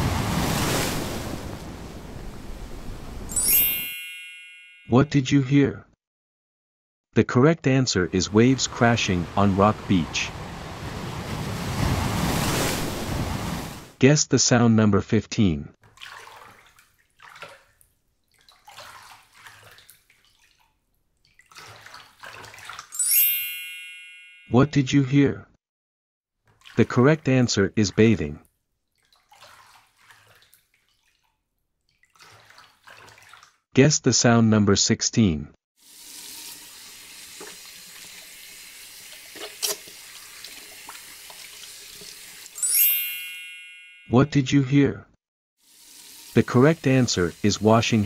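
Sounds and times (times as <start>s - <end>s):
bath water sloshing and splashing: 0.0s - 1.9s, 15.8s - 23.0s, 26.4s - 27.1s, 28.6s - 33.7s, 35.9s - 42.6s
tap water running: 35.8s - 42.6s, 45.6s - 48.0s.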